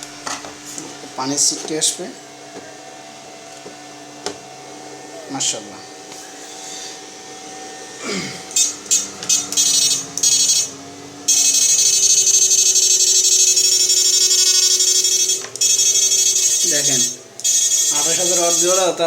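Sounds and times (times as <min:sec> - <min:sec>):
electric fish-shocking machine buzzing: 0:06.5 - 0:19.0.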